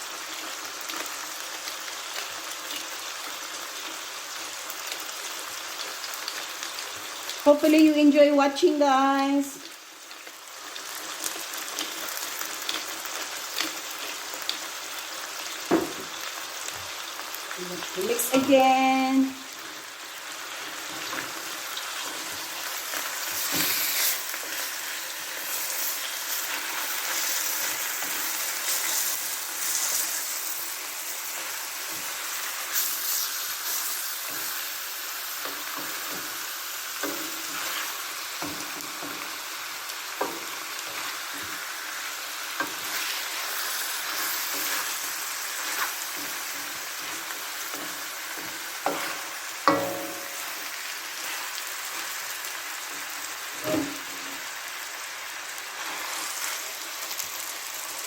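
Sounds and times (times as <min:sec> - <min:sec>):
chicken sizzling in a frying pan: 0:00.0 - 0:58.0
utensil scraping a pan: 0:23.2 - 0:24.7, 0:37.0 - 0:39.2, 0:42.6 - 0:50.6.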